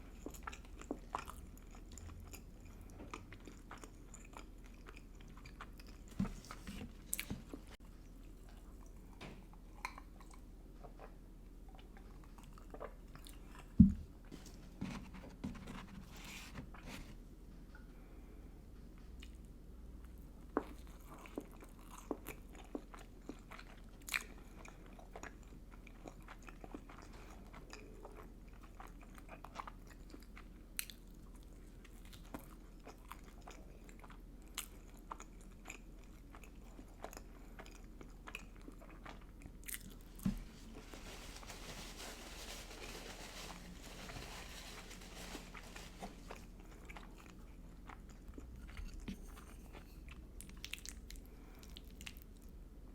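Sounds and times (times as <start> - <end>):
person chewing and crunching: 0.0 - 9.0, 20.5 - 41.2, 44.6 - 52.5.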